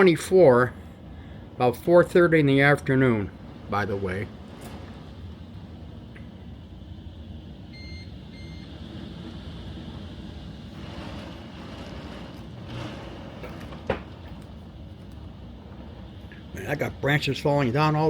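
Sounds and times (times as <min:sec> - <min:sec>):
wind: 0:00.0 - 0:18.0
heavy rain: 0:10.7 - 0:14.5.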